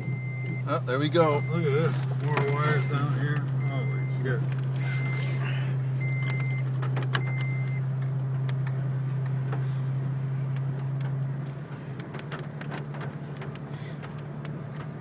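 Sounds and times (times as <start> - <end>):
vehicle engine drone: 0.0 - 15.0
electronic warning chimes: 2.5 - 5.4, 7.2 - 7.8
light ticks: 13.4 - 14.9.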